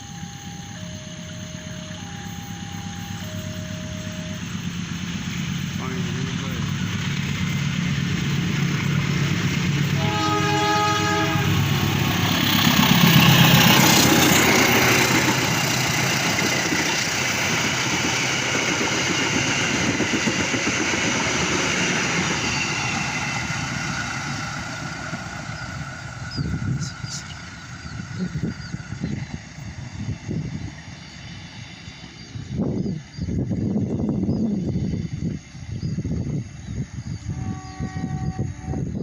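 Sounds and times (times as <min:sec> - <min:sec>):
train rumbling past: 0:00.0 - 0:39.0
train horn: 0:09.8 - 0:14.9, 0:37.1 - 0:39.0.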